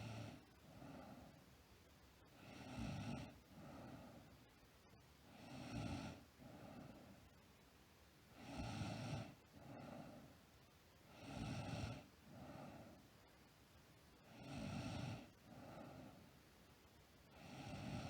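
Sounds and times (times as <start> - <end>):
girl snoring: 11.2 - 12.1, 14.3 - 15.3, 17.4 - 18.0.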